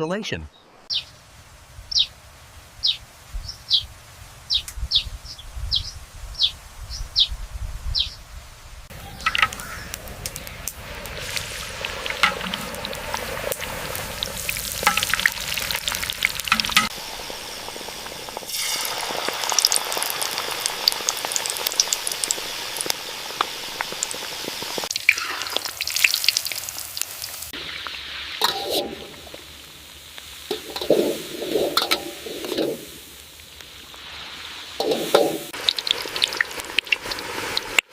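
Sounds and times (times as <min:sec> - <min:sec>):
food sizzling in hot oil: 0:08.9 - 0:37.9.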